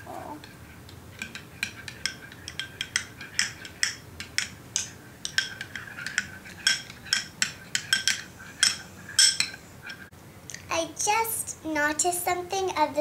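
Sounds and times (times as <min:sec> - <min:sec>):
spoon clinking against bowl: 0:01.2 - 0:09.6.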